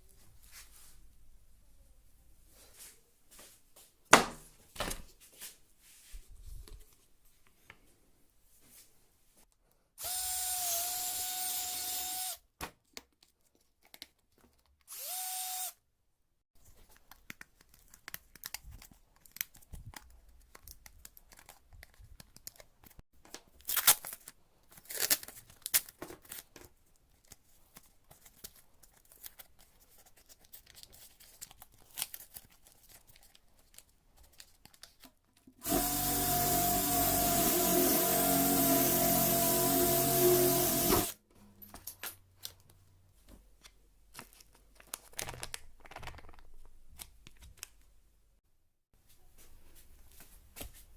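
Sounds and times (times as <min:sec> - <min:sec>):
small power tool whining: 0:10.0 - 0:12.4, 0:14.9 - 0:15.8, 0:35.6 - 0:41.2.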